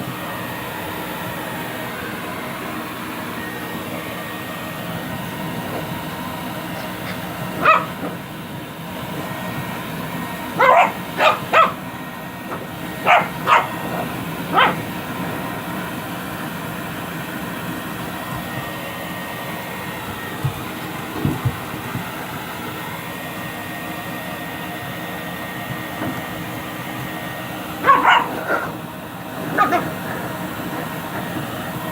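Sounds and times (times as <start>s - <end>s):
grooming dryer rushing: 0.0s - 31.9s
dog barking and yipping: 6.7s - 8.2s, 10.4s - 15.0s, 27.8s - 30.9s.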